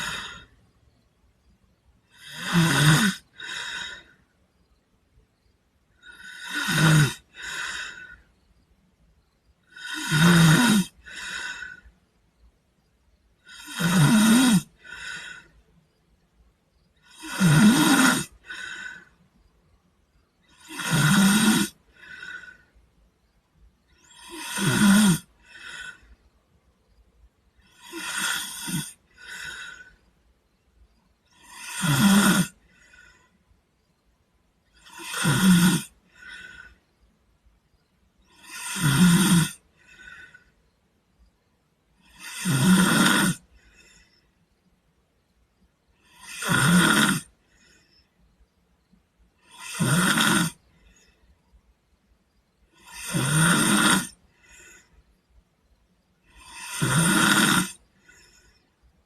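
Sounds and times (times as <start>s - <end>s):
boy snoring: 0.0s - 0.6s, 2.0s - 4.2s, 5.9s - 8.2s, 9.6s - 11.9s, 13.4s - 15.6s, 17.0s - 19.2s, 20.5s - 22.7s, 24.0s - 26.2s, 27.6s - 30.0s, 31.3s - 33.2s, 34.7s - 36.8s, 38.3s - 40.5s, 42.0s - 44.1s, 46.0s - 47.8s, 49.4s - 50.6s, 52.7s - 54.8s, 56.2s - 58.5s.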